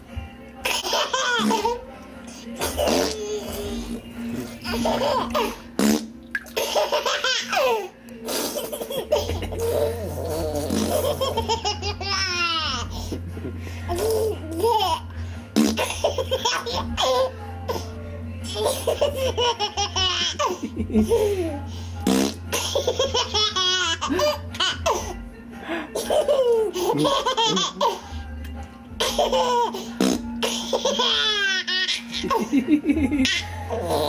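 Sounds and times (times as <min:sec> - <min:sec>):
silly vocal noises: 0:01.4 - 0:06.1, 0:08.2 - 0:11.4
boy and man laughing: 0:08.4 - 0:12.8, 0:18.6 - 0:21.6, 0:22.6 - 0:25.1, 0:26.0 - 0:28.0, 0:30.6 - 0:33.5.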